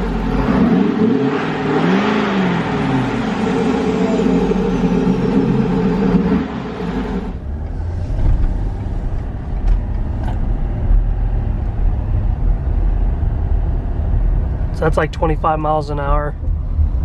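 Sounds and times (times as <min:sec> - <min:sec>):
diesel truck engine rumbling: 0:00.0 - 0:17.0.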